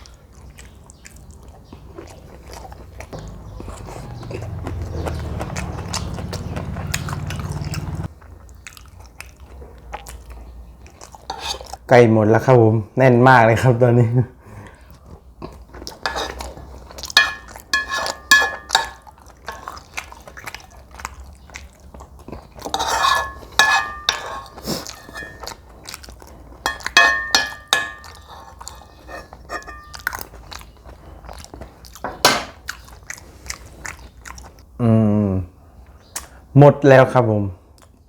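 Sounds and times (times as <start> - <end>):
person chewing and crunching food: 0.0 - 11.8, 14.6 - 34.8
utensils clinking against dish: 17.1 - 19.7, 22.7 - 25.6, 26.6 - 30.2.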